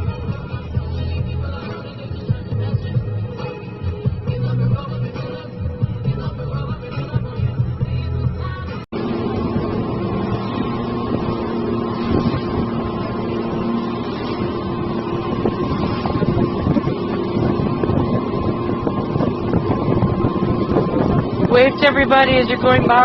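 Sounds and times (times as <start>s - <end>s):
boat motor humming: 0.0s - 23.0s
wind buffeting microphone: 9.0s - 23.0s.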